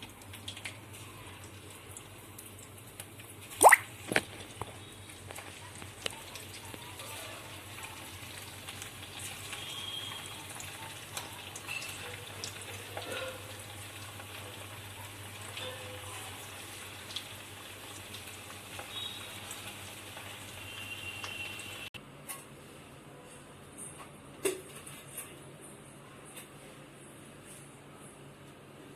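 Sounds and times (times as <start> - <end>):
oil popping and crackling: 0.0 - 15.6, 16.7 - 21.8
food sizzling in hot oil: 0.1 - 4.1, 7.1 - 15.6, 16.3 - 21.9.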